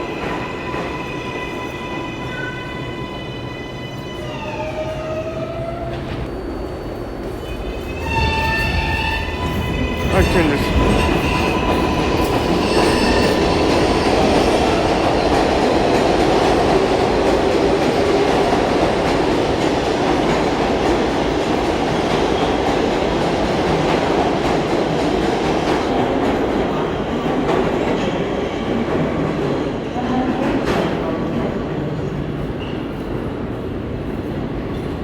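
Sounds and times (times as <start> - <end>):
train wheels rumbling on rails: 3.9 - 35.0
sharp train clacks: 5.9 - 28.2.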